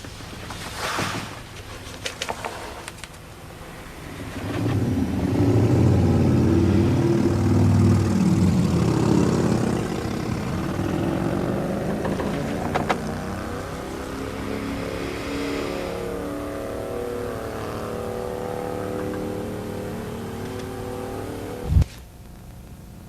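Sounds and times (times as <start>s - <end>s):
car engine revving: 3.4s - 21.7s.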